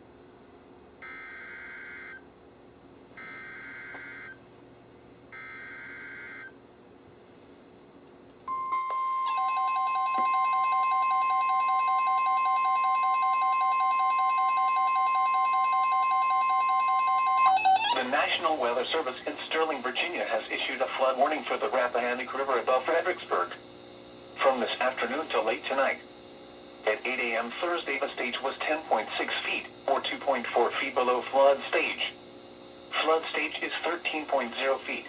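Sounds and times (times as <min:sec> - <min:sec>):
steady warning alarm tone: 0:01.0 - 0:02.2, 0:03.2 - 0:04.4, 0:05.3 - 0:06.6, 0:08.5 - 0:19.0
data tone bursts: 0:08.5 - 0:18.0.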